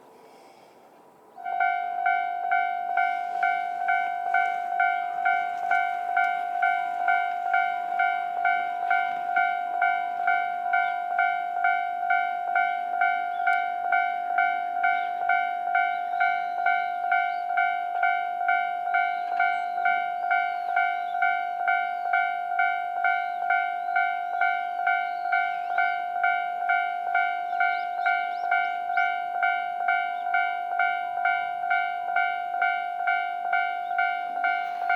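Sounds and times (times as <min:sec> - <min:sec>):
level crossing bell dinging: 0:01.4 - 0:16.0.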